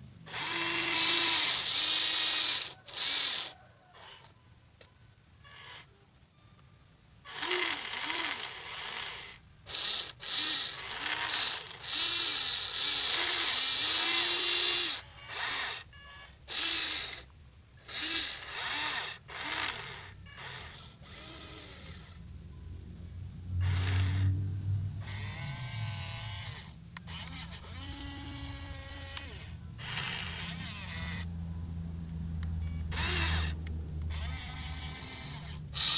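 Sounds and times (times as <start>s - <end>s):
small electric motors whirring: 0.0s - 4.4s, 5.4s - 5.9s, 7.2s - 22.2s, 23.6s - 31.4s, 32.4s - 35.9s
low hum: 20.1s - 35.9s.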